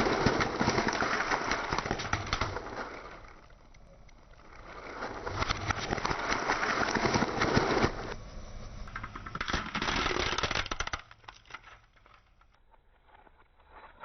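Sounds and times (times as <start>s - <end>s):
tyres crunching over glass marbles: 8.9s - 14.0s.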